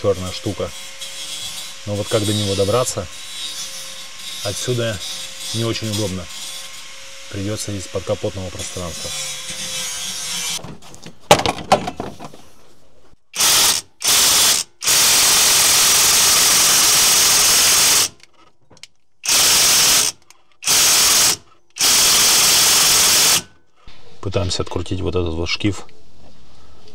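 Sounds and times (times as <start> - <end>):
impact wrench bursts: 13.4 - 18.3, 19.2 - 23.6.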